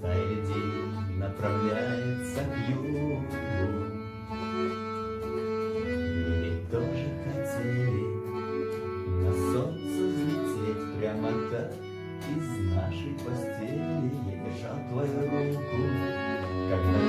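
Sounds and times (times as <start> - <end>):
button accordion playing: 0.0 - 17.0
rock backing track: 8.5 - 10.8.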